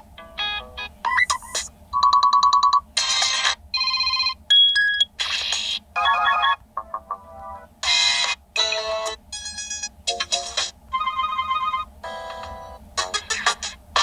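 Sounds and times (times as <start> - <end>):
electronic ringtone melodies: 0.2 - 2.8, 11.0 - 12.6.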